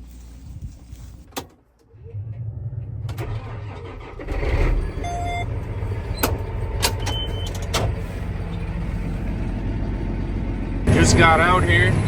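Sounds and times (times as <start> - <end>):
tractor diesel engine rumbling: 0.0 - 12.0
short electronic beep: 4.8 - 5.5.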